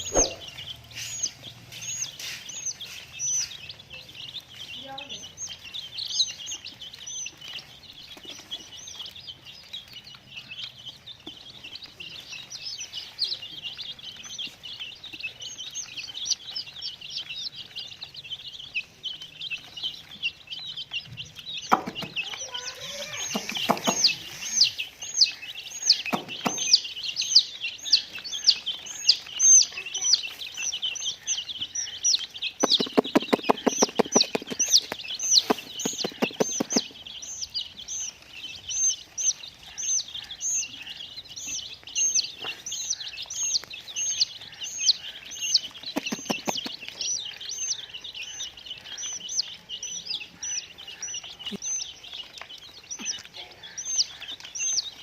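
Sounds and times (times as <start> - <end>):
loud repeating chirp: 0.0 - 1.4, 21.6 - 29.7, 32.4 - 38.1
baby chicks peeping: 0.0 - 55.0
knocks: 26.1 - 26.7.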